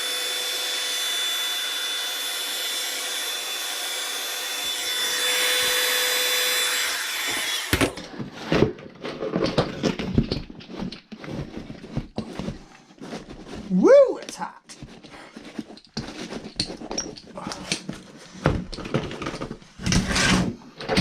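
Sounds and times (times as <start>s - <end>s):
hot-air blower whining: 0.0s - 8.0s
handling knocks and clicks: 7.7s - 13.7s, 14.7s - 20.1s.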